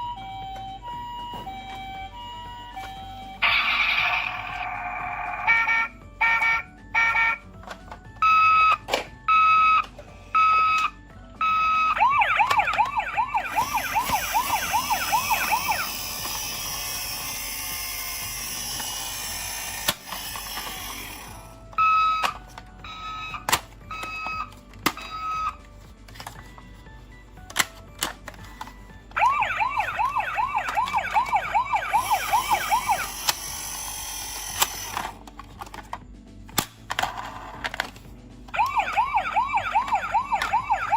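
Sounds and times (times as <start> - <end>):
toy siren beeping tones: 0.0 - 7.5, 8.2 - 19.7, 20.6 - 25.6, 28.6 - 35.1, 38.6 - 40.9
fast warbling siren: 3.4 - 5.9, 11.4 - 15.9, 29.2 - 33.1, 38.6 - 40.9.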